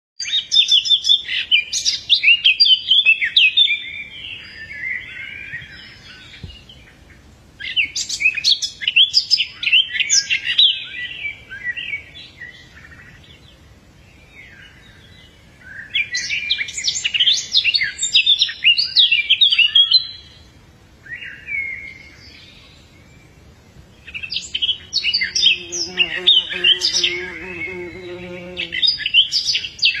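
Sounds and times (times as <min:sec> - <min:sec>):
songbird chirping: 0:00.2 - 0:30.0
low steady pitched tone: 0:24.8 - 0:29.0.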